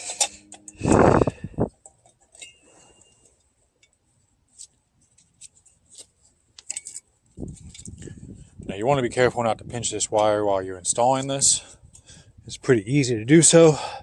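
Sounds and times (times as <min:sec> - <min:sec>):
light metallic clicks and clinks: 0:01.8 - 0:04.0, 0:06.6 - 0:08.1.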